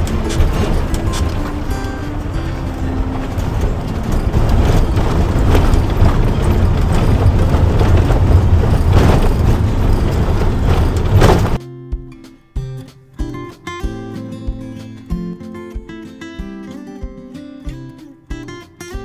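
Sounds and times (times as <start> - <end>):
engine and tyres rumbling: 0.0 - 11.6
knocks and rattles: 0.0 - 11.6.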